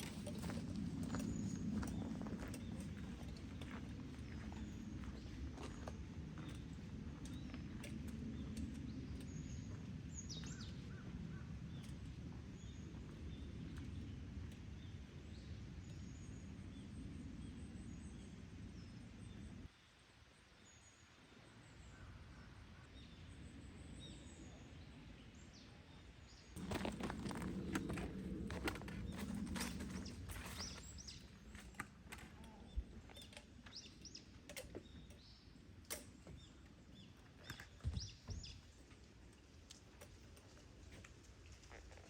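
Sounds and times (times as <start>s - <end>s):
small birds chirping: 0.0s - 19.7s, 20.6s - 42.0s
footsteps: 26.6s - 32.4s
steady low rumble: 26.6s - 33.7s.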